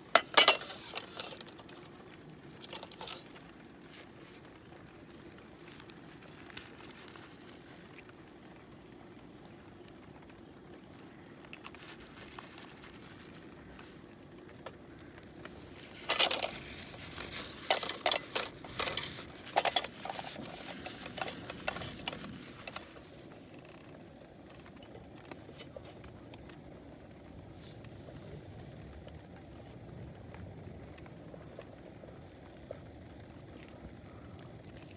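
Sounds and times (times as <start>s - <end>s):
packaging crinkling and rustling: 0.1s - 8.2s, 10.3s - 26.6s, 32.2s - 34.9s.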